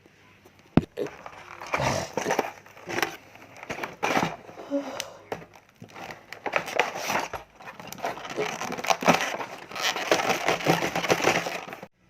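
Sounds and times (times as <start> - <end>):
rustling: 0.3 - 12.0.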